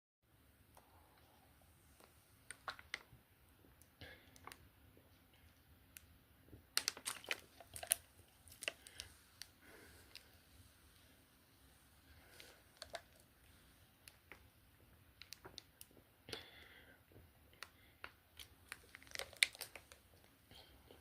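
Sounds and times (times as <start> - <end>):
crinkling handling noises: 1.2 - 3.1, 6.7 - 16.4, 17.6 - 21.0.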